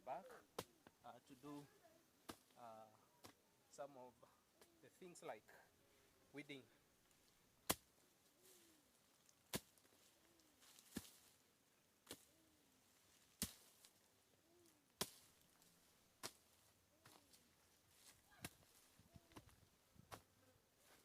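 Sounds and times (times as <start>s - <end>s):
hoe blade striking soil: 7.6s - 7.9s, 9.5s - 9.8s, 12.0s - 12.3s, 13.4s - 13.9s.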